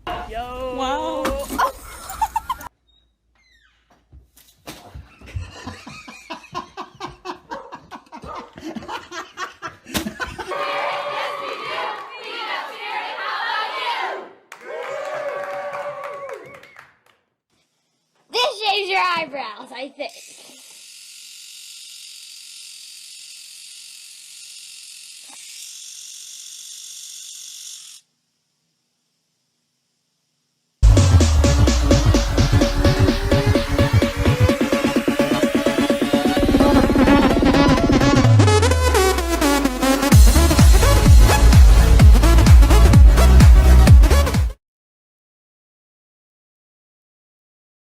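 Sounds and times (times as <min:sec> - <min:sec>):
person laughing hard: 0:01.4 - 0:02.7, 0:04.9 - 0:10.6
crowd shouting: 0:10.4 - 0:16.5
electric trimmer buzzing: 0:20.0 - 0:43.3.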